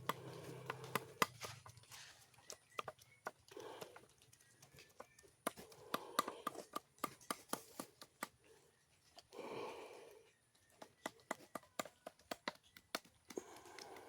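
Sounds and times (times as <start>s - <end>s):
knocks and taps of hand work: 5.0s - 8.4s, 10.8s - 14.0s.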